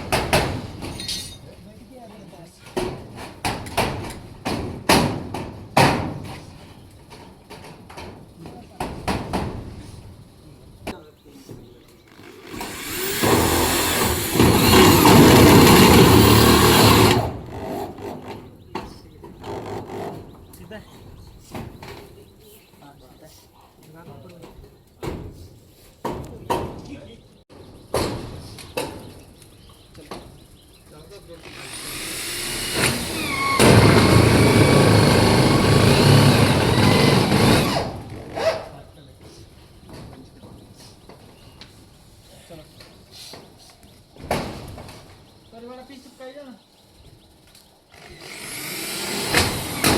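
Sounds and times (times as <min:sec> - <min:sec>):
power tool motor running: 0:12.1 - 0:18.2, 0:31.4 - 0:38.1, 0:47.9 - 0:49.9.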